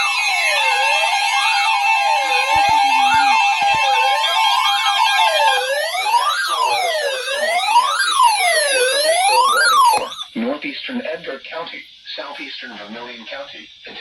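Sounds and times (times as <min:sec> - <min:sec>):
steady alert tone: 0:00.0 - 0:07.7, 0:08.9 - 0:10.4
sweeping siren-like tone: 0:00.0 - 0:10.4.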